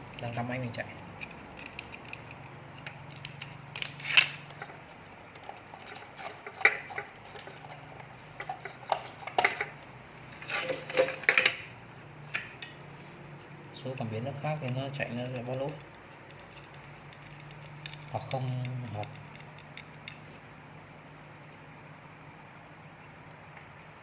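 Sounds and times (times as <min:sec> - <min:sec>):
clicks and metallic clinks: 0:10.4 - 0:11.6.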